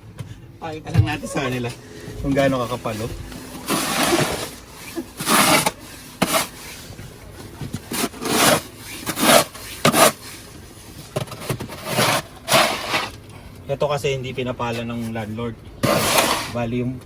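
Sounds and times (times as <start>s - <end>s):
snow shovel scraping snow: 1.0s - 16.9s.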